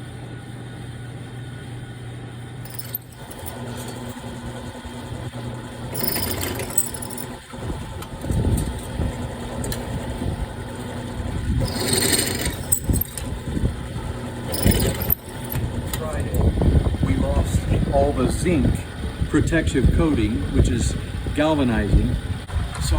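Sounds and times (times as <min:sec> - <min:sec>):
electric drill boring through steel: 0:05.8 - 0:08.9, 0:11.6 - 0:13.3, 0:14.4 - 0:16.0.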